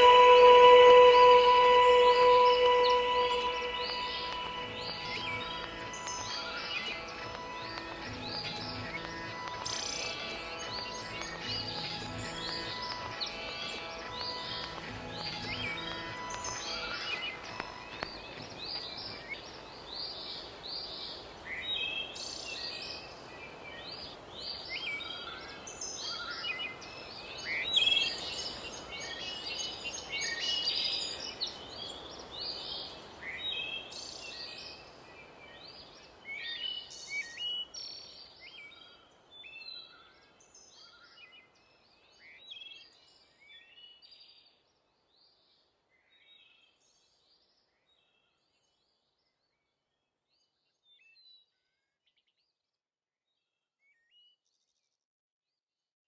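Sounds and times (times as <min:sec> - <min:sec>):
small birds chirping: 0:00.0 - 0:45.6.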